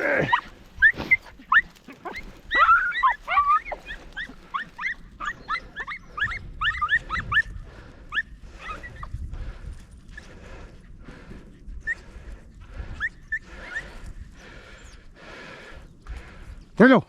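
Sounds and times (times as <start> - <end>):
dogs yelping: 0.0 - 9.2, 11.8 - 14.0.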